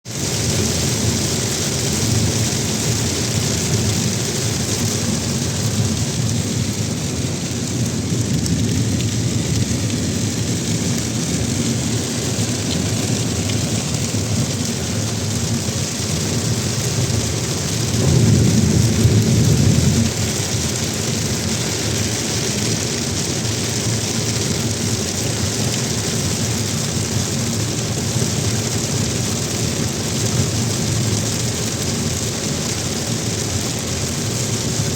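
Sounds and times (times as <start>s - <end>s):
heavy rain: 0.0s - 34.9s
deep low rumble: 5.2s - 16.4s.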